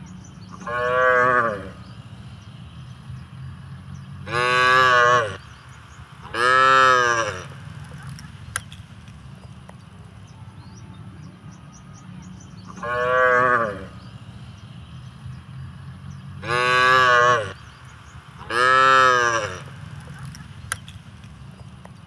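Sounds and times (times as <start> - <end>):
cattle mooing: 0.6 - 1.8, 4.3 - 5.4, 6.2 - 7.6, 12.8 - 14.0, 16.4 - 17.6, 18.4 - 19.7.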